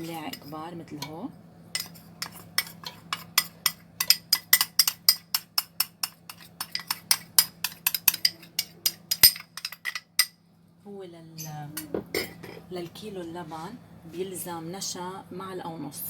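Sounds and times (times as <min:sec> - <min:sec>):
metal spoon clinking against pot: 0:00.0 - 0:01.2, 0:01.8 - 0:10.4.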